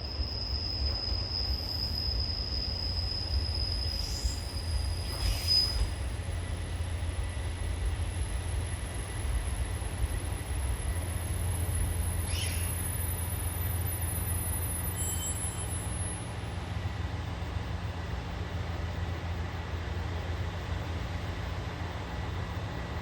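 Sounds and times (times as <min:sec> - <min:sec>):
diesel railcar engines idling: 0:00.0 - 0:23.0
short high chirp: 0:14.9 - 0:15.8.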